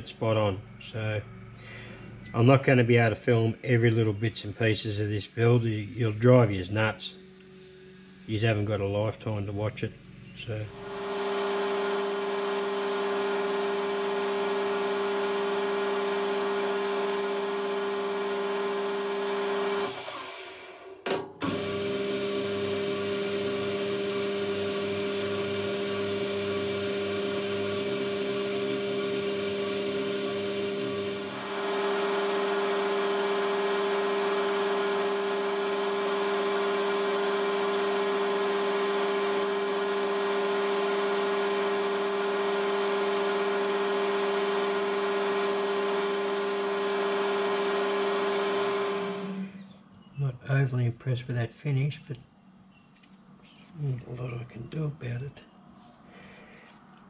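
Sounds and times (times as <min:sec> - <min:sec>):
metal lathe humming: 0:10.7 - 0:20.8, 0:21.5 - 0:49.6.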